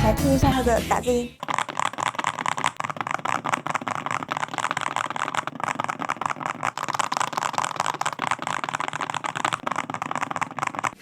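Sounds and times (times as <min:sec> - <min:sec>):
fast keyboard typing: 0:01.4 - 0:11.0.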